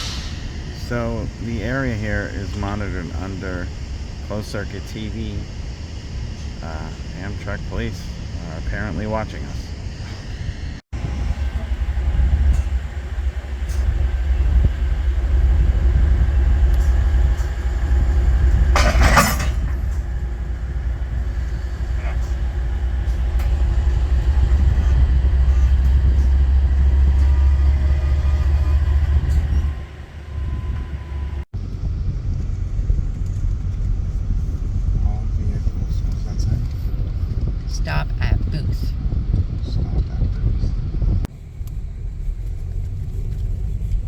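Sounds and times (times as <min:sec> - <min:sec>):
hissing burst: 0:00.0 - 0:08.9.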